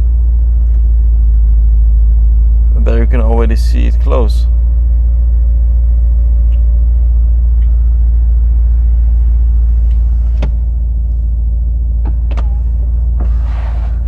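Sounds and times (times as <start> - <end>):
car engine idling rumble: 0.0 - 14.0
roof mechanism clicks and squeaks: 12.0 - 14.0.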